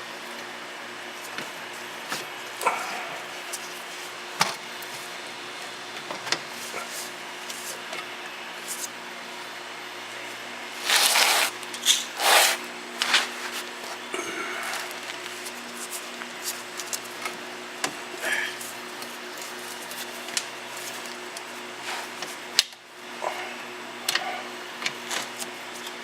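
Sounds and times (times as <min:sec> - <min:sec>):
pneumatic air ratchet: 0:10.8 - 0:12.6.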